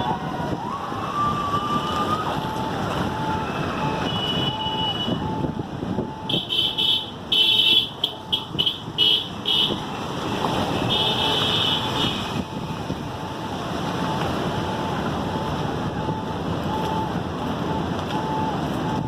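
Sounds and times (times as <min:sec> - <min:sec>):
steady rushing noise: 0:00.0 - 0:19.0
vehicle horns honking: 0:04.0 - 0:05.2, 0:06.3 - 0:09.9, 0:10.6 - 0:12.4.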